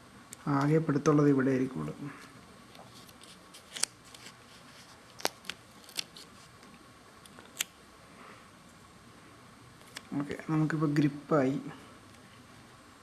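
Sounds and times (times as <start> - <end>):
faint hiss: 5.9 - 13.0.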